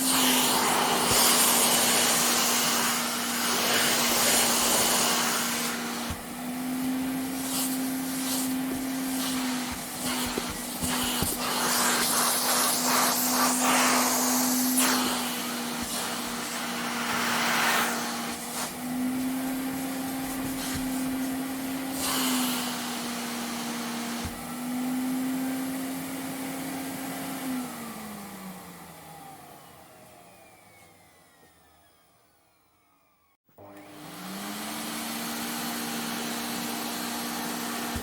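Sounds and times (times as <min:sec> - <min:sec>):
vacuum cleaner motor whine: 0:00.0 - 0:38.0
vacuum motor spinning down: 0:00.0 - 0:38.0
vacuum suction hiss: 0:07.4 - 0:18.8.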